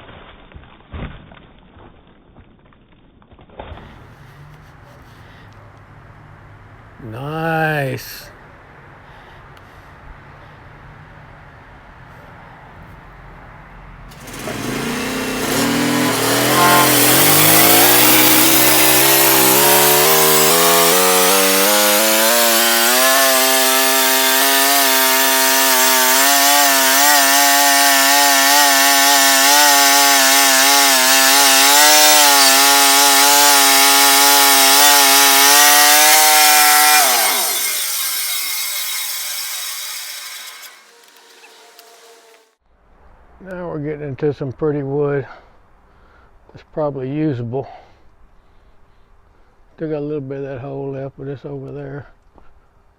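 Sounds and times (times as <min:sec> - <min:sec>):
saw blade cutting log: 0:14.1 - 0:42.6
sawmill engine: 0:14.1 - 0:42.6.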